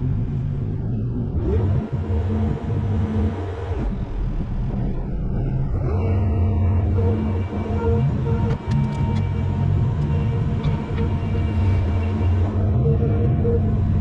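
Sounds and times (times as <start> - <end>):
heavy machinery engine revving: 1.4 - 4.0, 5.8 - 14.0.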